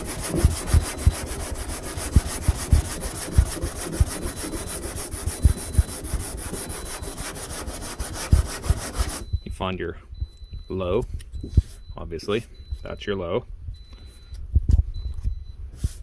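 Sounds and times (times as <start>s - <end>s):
sanding block rasping on metal: 0.0s - 9.3s.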